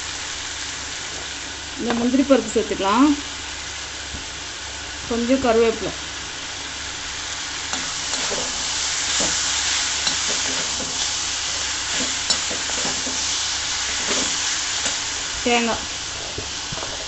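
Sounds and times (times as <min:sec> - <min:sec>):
food sizzling in hot oil: 0:00.0 - 0:17.0
spoon scraping a pan: 0:07.7 - 0:15.0.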